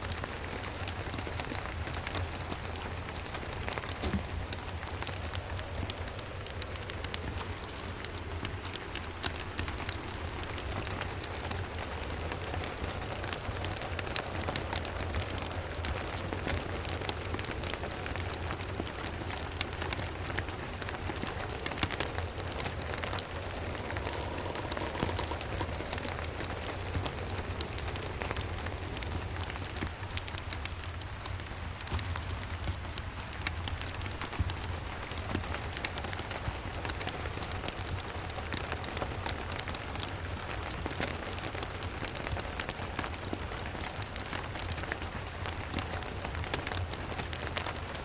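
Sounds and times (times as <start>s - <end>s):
constant low rumble: 0.0s - 48.0s
rain falling: 0.0s - 48.0s
wood fire crackling: 0.0s - 48.0s.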